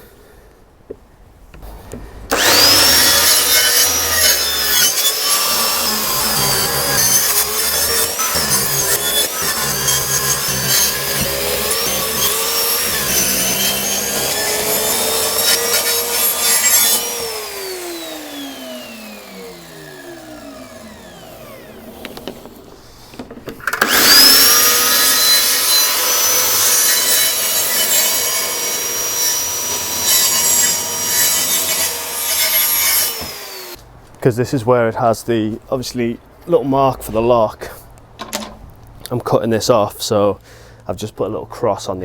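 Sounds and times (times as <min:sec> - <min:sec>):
circular saw cutting wood: 0:02.3 - 0:22.9, 0:23.7 - 0:33.8.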